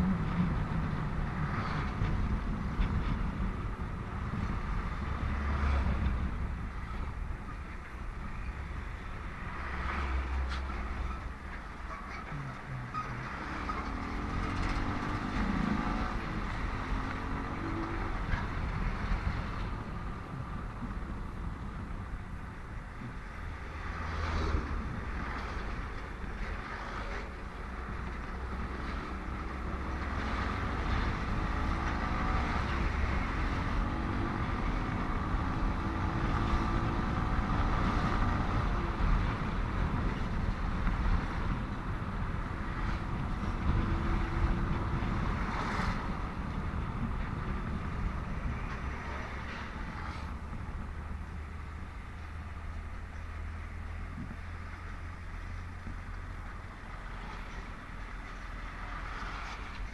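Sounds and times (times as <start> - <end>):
traffic passing: 0.0 - 59.9
wind on microphone: 27.5 - 52.2.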